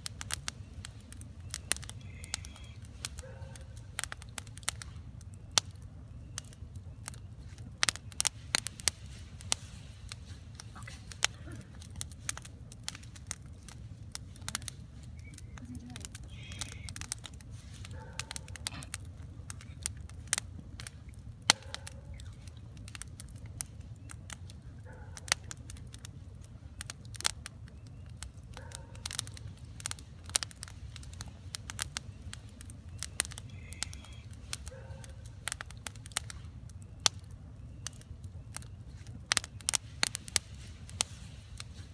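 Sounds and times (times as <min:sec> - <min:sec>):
steady low rumble: 0:00.0 - 0:28.3
campfire crackling: 0:00.0 - 0:41.9
fire snaps and pops: 0:00.0 - 0:41.9.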